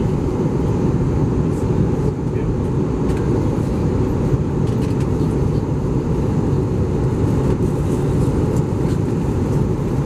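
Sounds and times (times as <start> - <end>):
airplane cabin rumble: 0.0 - 10.0.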